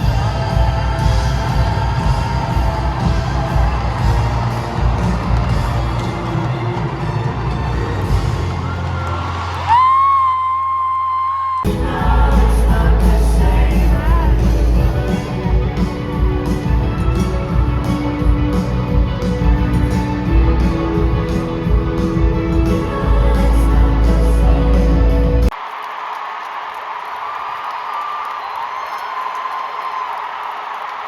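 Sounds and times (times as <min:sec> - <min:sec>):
live pop band with singing: 0:00.0 - 0:06.0, 0:11.6 - 0:25.5.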